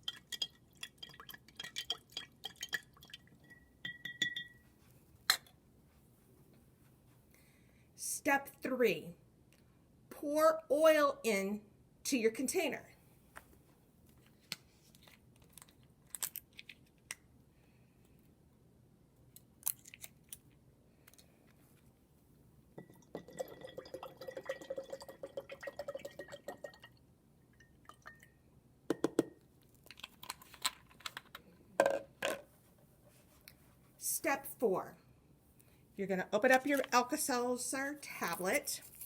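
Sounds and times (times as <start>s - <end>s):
oil pouring into water: 0.0s - 3.4s, 22.8s - 27.0s
bottle and jar clicks and knocks: 3.8s - 4.6s, 28.9s - 29.4s, 31.8s - 32.4s.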